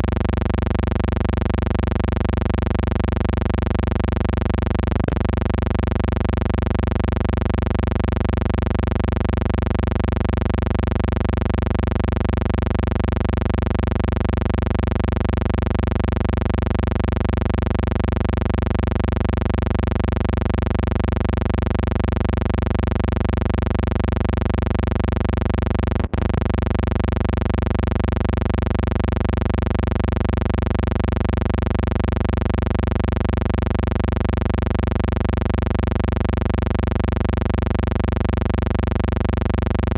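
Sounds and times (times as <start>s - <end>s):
electrical hum: 0.0s - 8.6s, 25.5s - 28.7s.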